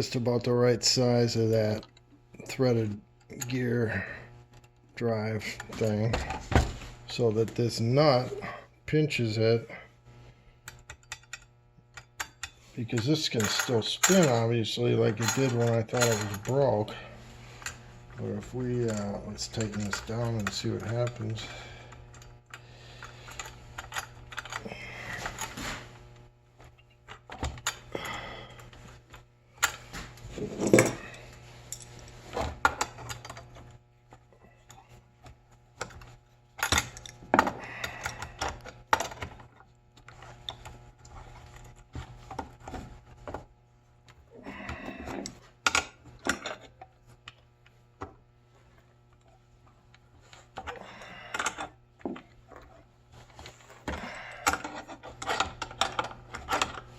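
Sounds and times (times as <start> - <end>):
steady low hum: 0.0 - 56.9
metal tool clicks and rattles: 10.7 - 17.0, 18.6 - 25.6, 54.2 - 56.9.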